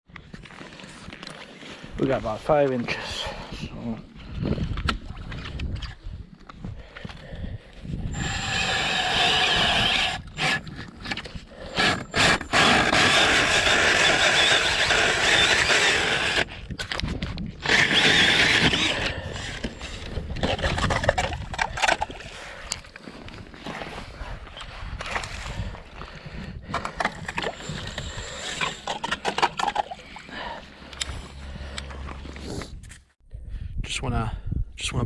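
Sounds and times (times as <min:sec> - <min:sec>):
ice auger grinding through ice: 0:08.1 - 0:22.5, 0:26.7 - 0:32.6.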